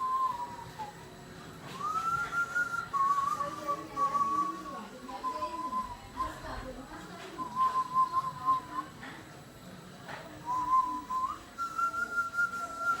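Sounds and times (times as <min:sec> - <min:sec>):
man whistling soft held notes: 0:00.0 - 0:06.4, 0:10.4 - 0:13.0.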